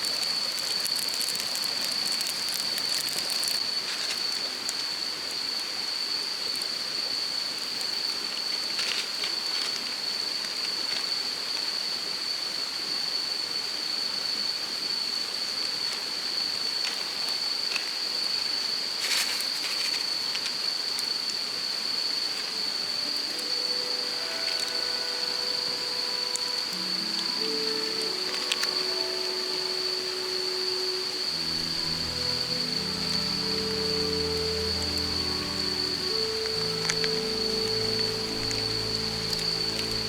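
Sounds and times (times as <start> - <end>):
campfire crackling: 0.0 - 4.0, 22.8 - 40.0
steady hiss: 0.0 - 40.0
high-pitched drone: 22.8 - 40.0.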